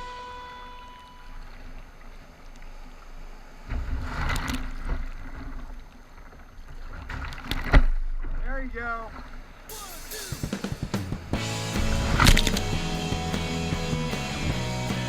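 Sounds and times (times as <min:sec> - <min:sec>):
water splashing: 0:11.3 - 0:14.6.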